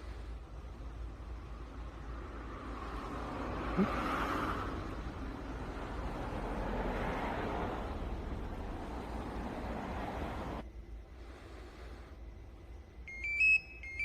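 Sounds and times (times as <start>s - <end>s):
car running hum: 0.0s - 10.6s.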